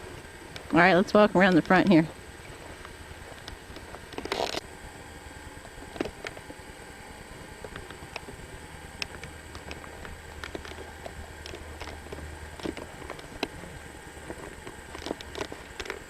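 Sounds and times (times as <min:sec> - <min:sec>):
steady low hum: 0:00.0 - 0:16.0
footsteps and camera handling clicks: 0:01.6 - 0:04.6, 0:07.6 - 0:08.4, 0:09.0 - 0:16.0.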